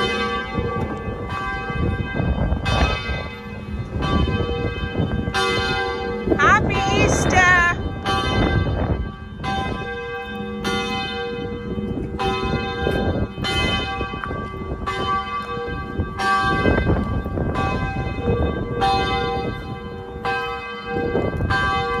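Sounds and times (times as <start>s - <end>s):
church bells ringing: 0.0s - 22.0s.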